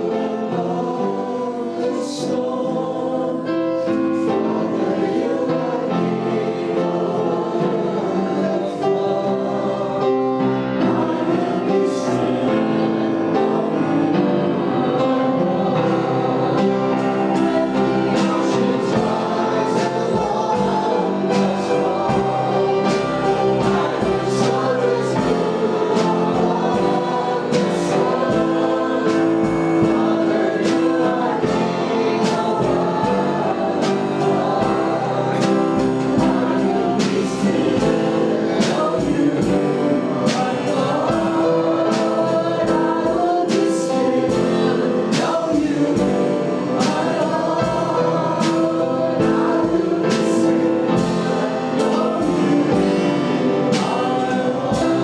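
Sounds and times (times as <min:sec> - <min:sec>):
band and congregation singing: 0:00.0 - 0:55.0
drum and cymbal hits: 0:15.9 - 0:55.0.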